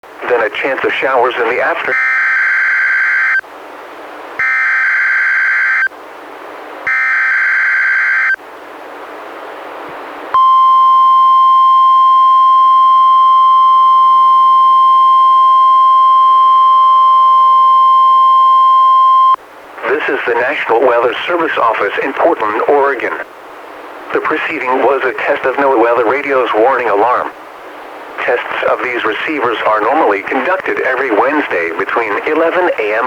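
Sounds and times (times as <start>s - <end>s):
static hiss: 0.1s - 2.0s, 12.3s - 33.0s
steady warning alarm tone: 1.9s - 3.4s, 4.4s - 5.9s, 6.9s - 8.4s, 10.4s - 19.4s
screechy digital data bursts: 6.9s - 8.4s.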